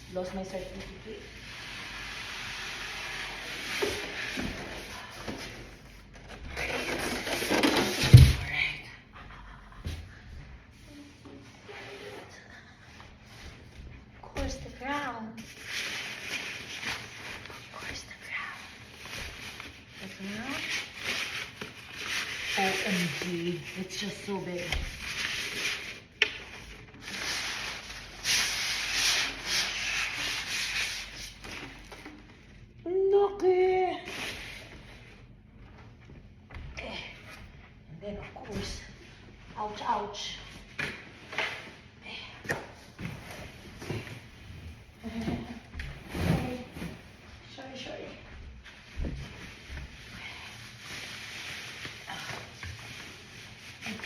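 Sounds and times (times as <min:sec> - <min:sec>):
packaging rubbing and scratching: 0:18.8 - 0:32.1.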